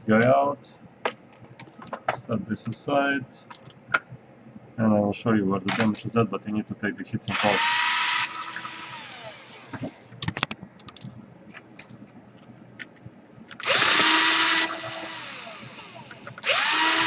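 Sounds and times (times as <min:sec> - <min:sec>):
electric screwdriver whine: 0:07.3 - 0:10.1, 0:13.6 - 0:17.0.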